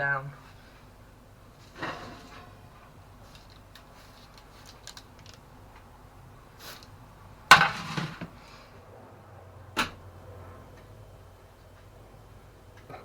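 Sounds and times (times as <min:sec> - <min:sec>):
baking tray and rack clinking: 0:01.6 - 0:02.8, 0:07.5 - 0:08.4.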